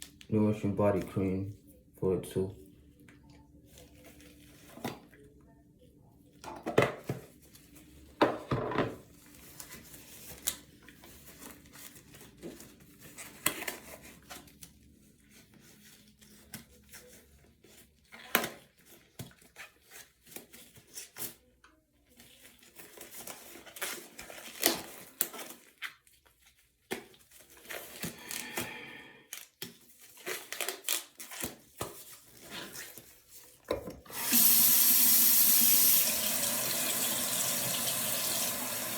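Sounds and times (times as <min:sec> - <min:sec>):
items knocking and clicking: 0:08.2 - 0:09.0.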